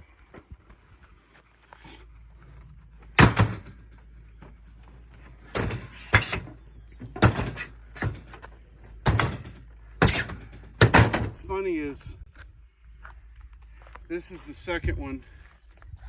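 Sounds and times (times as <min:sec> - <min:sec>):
coop panels banging: 0:03.0 - 0:11.6.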